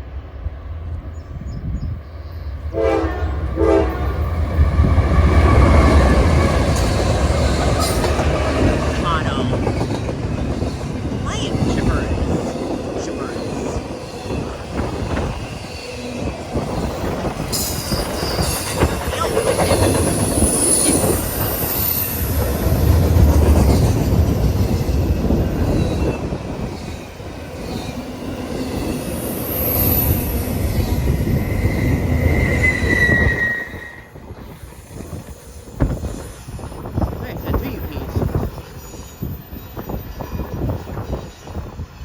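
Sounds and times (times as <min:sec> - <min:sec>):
freight train rumbling: 0:00.0 - 0:42.0
train wheels squealing: 0:14.3 - 0:22.4, 0:23.6 - 0:36.8, 0:38.2 - 0:42.0.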